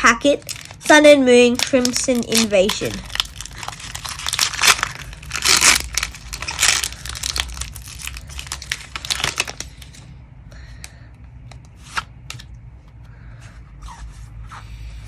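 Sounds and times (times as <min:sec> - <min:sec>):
foil pack tearing and crinkling: 0:00.0 - 0:10.0.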